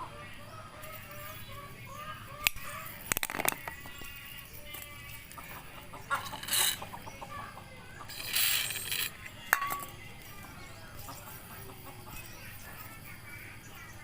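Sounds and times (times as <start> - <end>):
hissing scraping noises: 2.6 - 13.6
metallic clink: 8.1 - 10.0.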